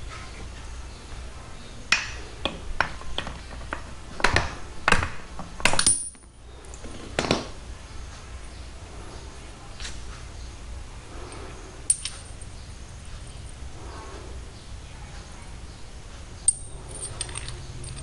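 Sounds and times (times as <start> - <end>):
metal parts clinking on workbench: 5.6 - 6.3, 11.9 - 12.4, 16.4 - 18.0.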